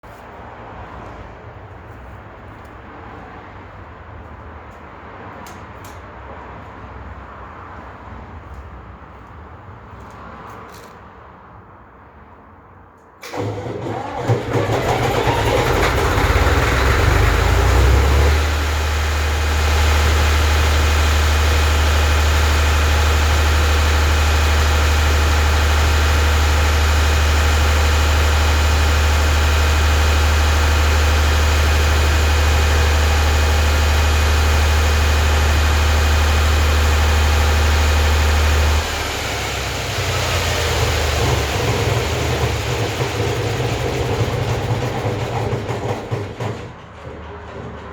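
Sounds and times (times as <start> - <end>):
generator engine droning: 13.2 - 46.6.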